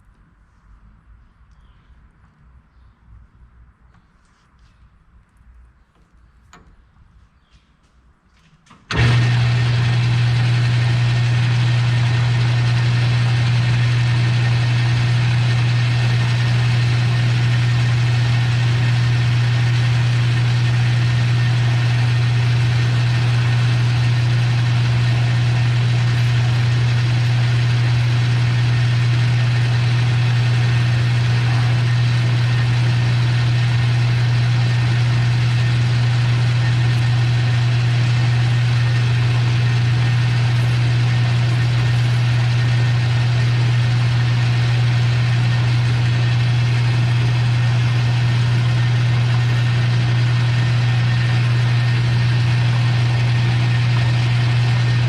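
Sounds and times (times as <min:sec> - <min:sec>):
electric machine motor humming: 0:08.9 - 0:55.0.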